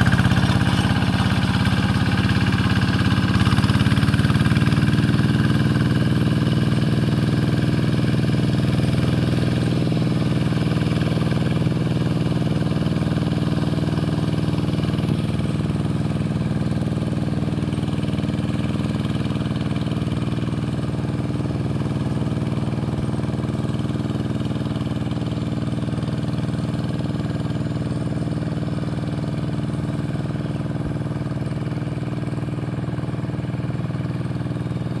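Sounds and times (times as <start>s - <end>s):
tractor engine running: 0.0s - 35.0s.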